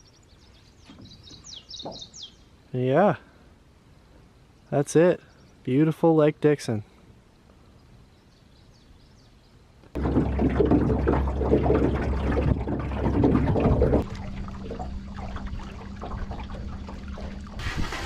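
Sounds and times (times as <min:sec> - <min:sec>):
boat motor hum: 0:10.0 - 0:18.0
water rushing and splashing: 0:10.0 - 0:18.0.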